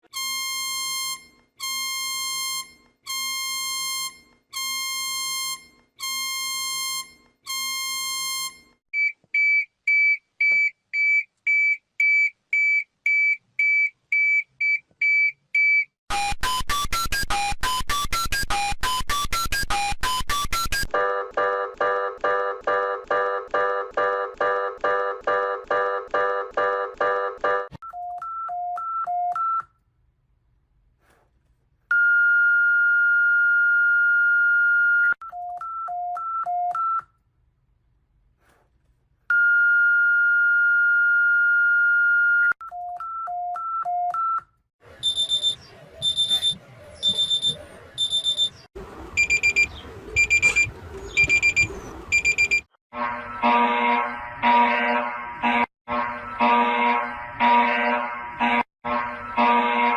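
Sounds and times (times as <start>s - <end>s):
synthetic alarm beeps: 45.0s - 48.6s, 49.2s - 52.7s.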